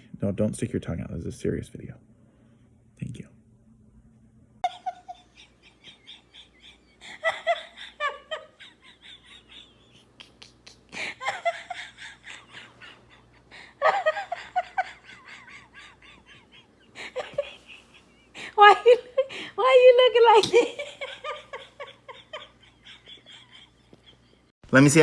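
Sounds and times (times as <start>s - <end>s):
people laughing: 4.6s - 24.5s.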